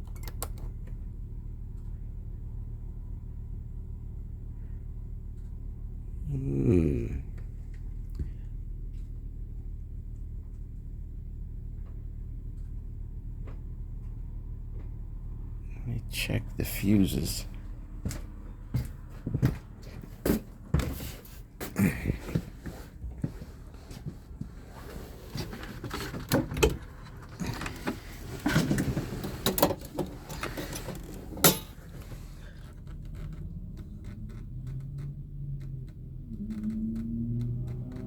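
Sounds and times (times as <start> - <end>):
fuse panel clicks and rattles: 0.0 - 1.0, 25.9 - 32.0
steady low hum: 0.0 - 38.0.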